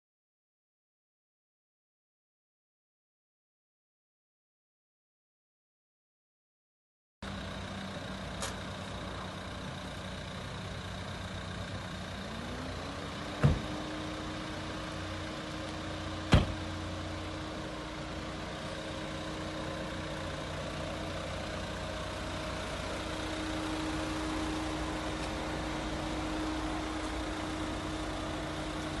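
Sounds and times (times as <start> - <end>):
vehicle engine idling: 7.2 - 29.0
sharp knocks: 13.4 - 13.7, 16.3 - 16.6.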